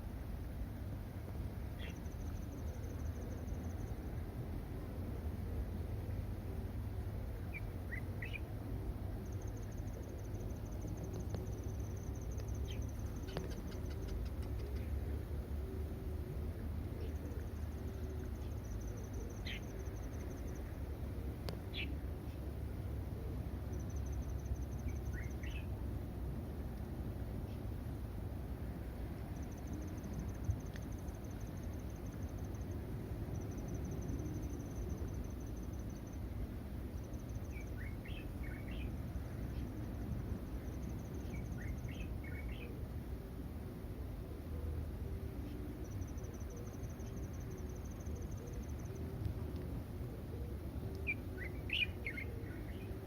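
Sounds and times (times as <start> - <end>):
steady low rumble: 0.0 - 53.0
insect trill: 1.6 - 4.4, 7.0 - 15.1, 16.9 - 22.0, 23.6 - 26.0, 29.1 - 42.8, 45.4 - 49.2.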